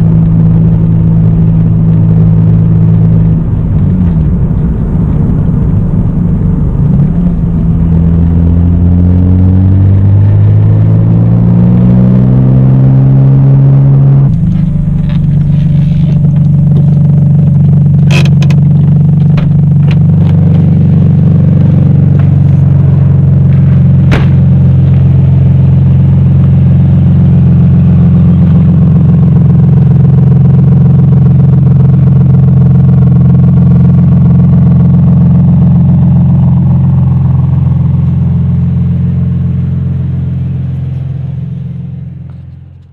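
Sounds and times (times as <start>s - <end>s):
car engine revving in gear: 2.1s - 29.4s.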